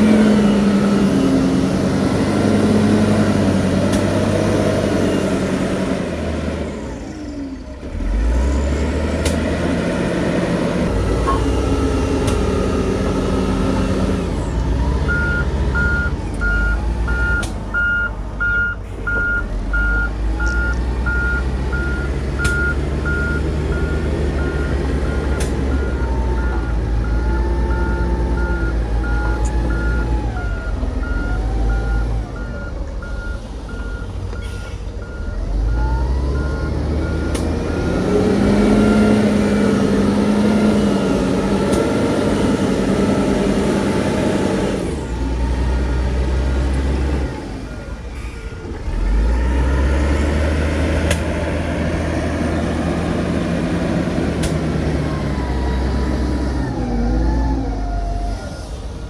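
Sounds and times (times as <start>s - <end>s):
diesel earthmoving machinery running: 0.0s - 59.0s
reversing alarm beeping: 14.9s - 41.1s.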